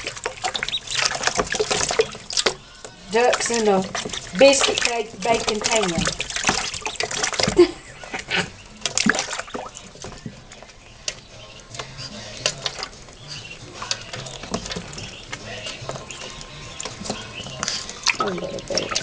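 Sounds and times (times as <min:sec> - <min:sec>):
ducklings splashing in water: 0:00.0 - 0:19.0.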